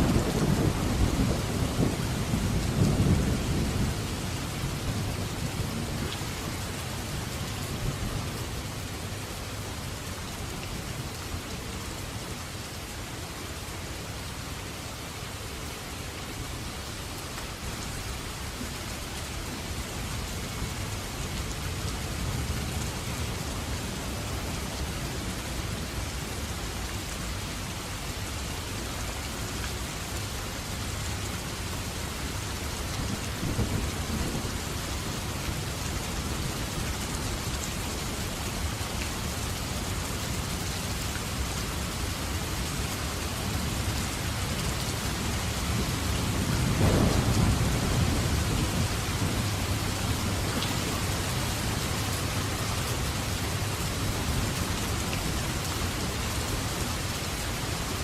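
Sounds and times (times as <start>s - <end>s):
heavy rain: 0.0s - 58.0s
thunder rolling: 46.5s - 49.5s.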